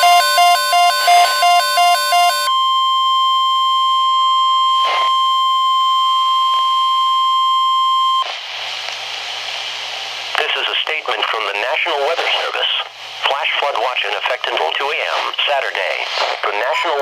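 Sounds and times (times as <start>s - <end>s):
telephone ringer warbling: 0.0s - 2.5s
loud single-pitched alarm tone: 0.0s - 3.8s
radio hiss: 8.2s - 17.0s.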